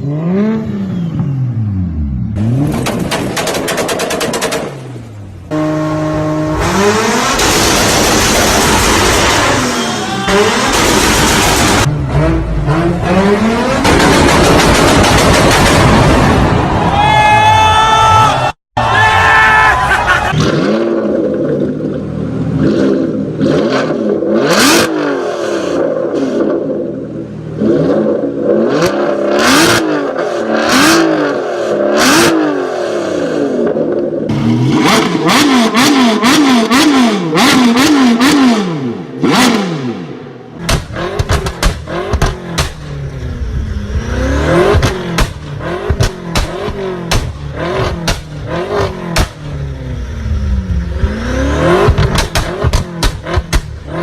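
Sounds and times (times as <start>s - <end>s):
car engine revving: 0.0s - 16.8s, 20.3s - 54.0s
exhaust bangs and pops: 2.6s - 5.0s, 7.3s - 9.7s, 13.7s - 16.8s, 40.6s - 43.1s, 44.6s - 49.6s, 50.9s - 54.0s.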